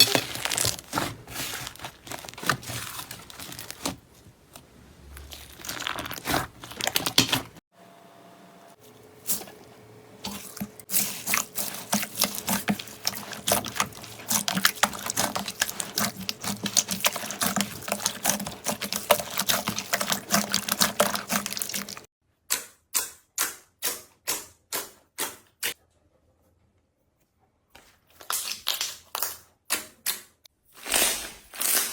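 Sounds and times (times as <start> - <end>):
wet squishes: 0.0 - 7.6, 10.2 - 22.1
slime crackling and popping: 5.2 - 7.4.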